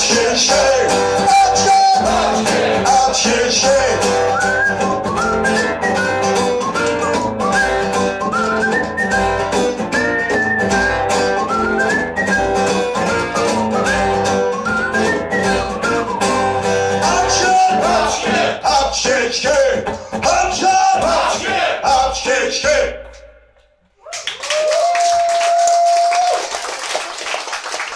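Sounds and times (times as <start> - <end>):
guitar chords: 0.0 - 21.5
steady drum beat: 20.3 - 21.6.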